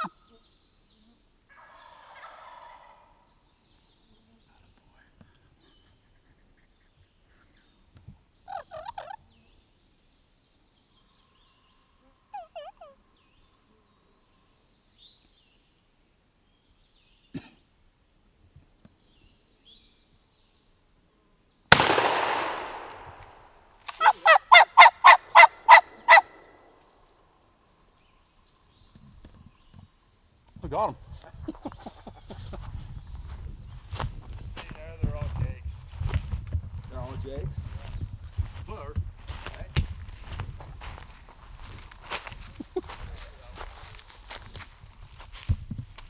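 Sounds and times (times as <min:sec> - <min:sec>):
loud close turkey calls: 0:00.0 - 0:00.3, 0:01.5 - 0:03.2, 0:08.5 - 0:09.2, 0:12.3 - 0:13.0, 0:24.0 - 0:26.5
turkeys gobbling: 0:01.5 - 0:03.2, 0:08.5 - 0:09.2, 0:12.3 - 0:13.0, 0:24.0 - 0:26.5
loud shotgun shot: 0:21.7 - 0:24.0.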